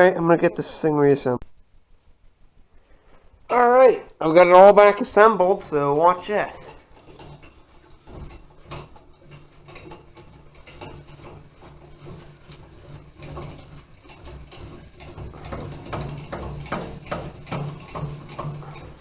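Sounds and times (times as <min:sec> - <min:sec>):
low hum pulsing: 0:01.4 - 0:19.0
handwheel cranking clicks: 0:05.0 - 0:19.0.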